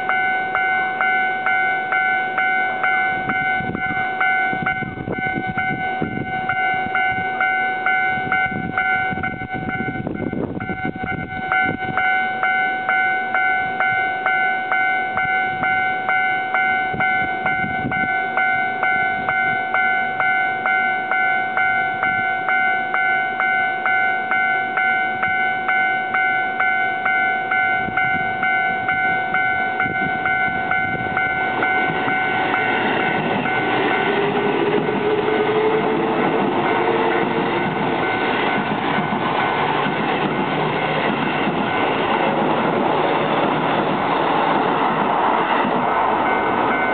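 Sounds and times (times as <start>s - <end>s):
level crossing alarm ringing: 0.0s - 42.4s, 46.2s - 46.9s
train rumbling: 0.0s - 46.9s
electric train motor whine: 17.0s - 46.9s.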